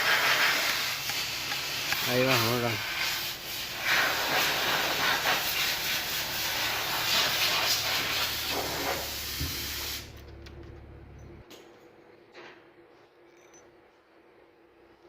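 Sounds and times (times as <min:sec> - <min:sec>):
loud hiss: 0:00.0 - 0:10.2
low hum: 0:02.9 - 0:15.0.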